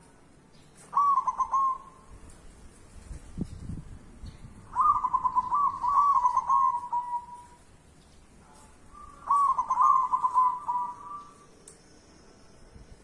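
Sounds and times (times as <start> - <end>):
dove cooing: 0.9 - 2.0, 4.7 - 7.6, 8.9 - 11.5.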